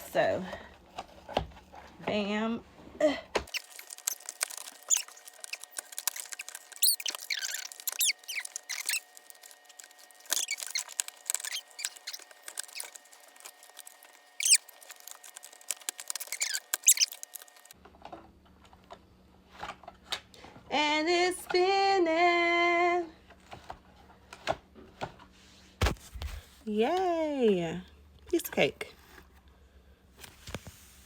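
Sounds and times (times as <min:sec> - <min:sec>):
rubber belt squeaking: 0:03.5 - 0:17.8.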